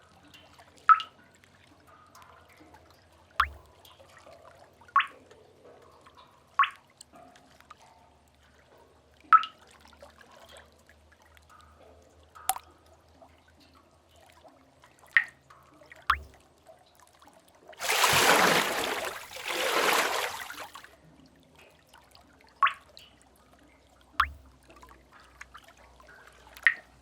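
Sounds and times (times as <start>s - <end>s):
water drops plinking into pool: 0.3s - 1.2s, 3.4s - 4.0s, 5.0s - 5.2s, 6.6s - 6.9s, 9.3s - 9.7s, 12.4s - 12.8s, 16.1s - 16.4s, 17.8s - 20.7s, 22.6s - 23.1s, 24.2s - 24.8s, 26.5s - 27.0s.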